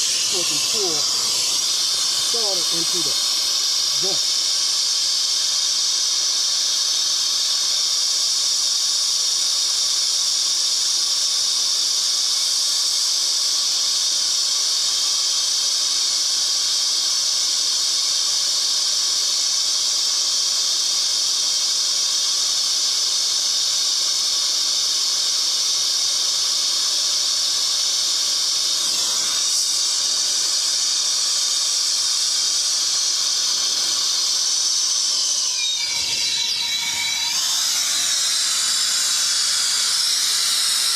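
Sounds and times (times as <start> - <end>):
torch flame hissing: 0.0 - 8.2, 21.8 - 40.9.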